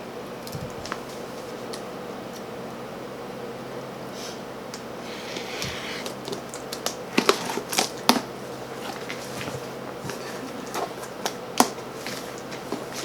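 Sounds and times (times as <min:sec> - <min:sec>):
packing tape snapping: 0:04.7 - 0:08.3
cardboard box being opened: 0:05.0 - 0:06.4.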